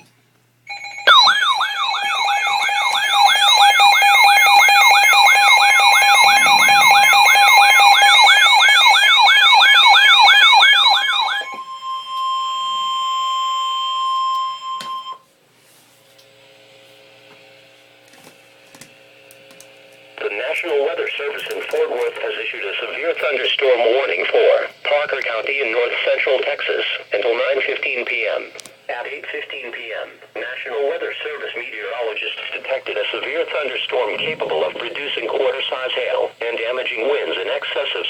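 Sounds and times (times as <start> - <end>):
faint hum: 0.0 - 38.0
steady alert tone: 0.7 - 11.6
warbling electronic siren tone: 0.7 - 15.1.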